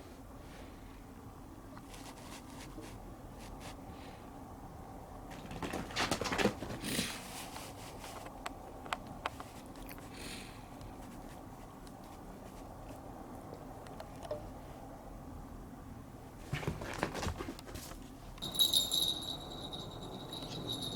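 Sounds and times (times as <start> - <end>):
kitten paws scampering on floor: 5.3 - 10.2, 16.4 - 20.9.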